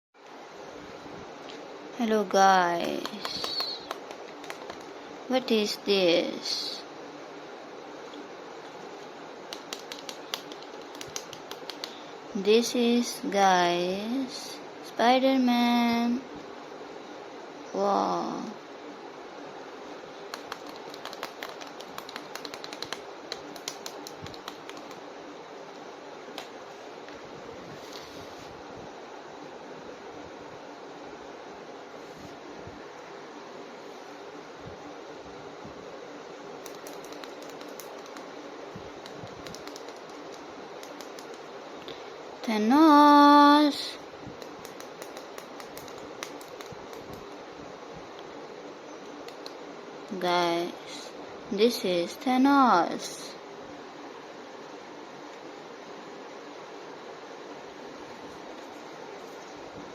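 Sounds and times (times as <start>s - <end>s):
steady hiss: 0.2s - 59.9s
plastic figure clicks and taps: 9.5s - 11.9s, 20.3s - 25.0s.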